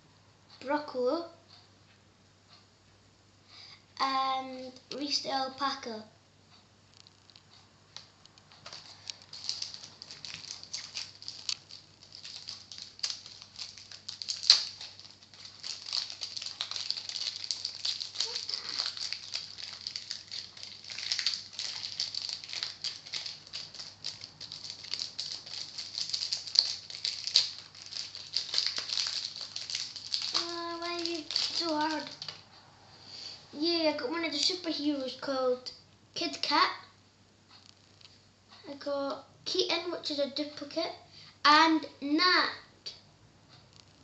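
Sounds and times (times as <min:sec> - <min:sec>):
foil packet crinkling: 0:08.5 - 0:32.4, 0:34.3 - 0:34.6
packet tearing open: 0:08.6 - 0:32.4.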